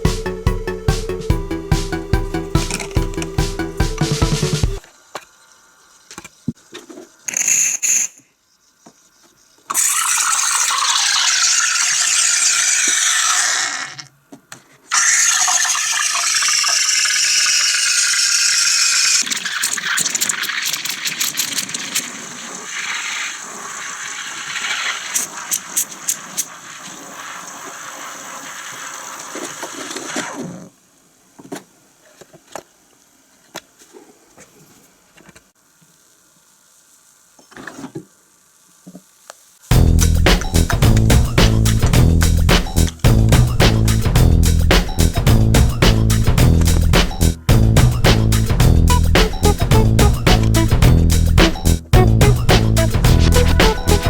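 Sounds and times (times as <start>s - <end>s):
steam wand hissing: 14.9s - 30.4s.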